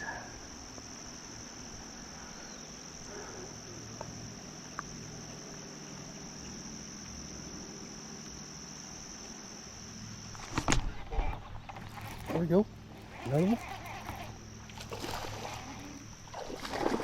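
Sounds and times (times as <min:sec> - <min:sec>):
crickets chirping: 0:00.0 - 0:17.0
faint ticks: 0:03.9 - 0:05.7.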